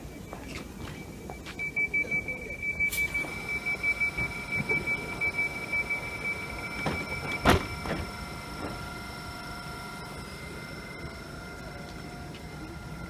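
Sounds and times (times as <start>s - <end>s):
train door warning beeps: 0.0s - 13.0s
train doors shutting thud: 6.7s - 8.9s.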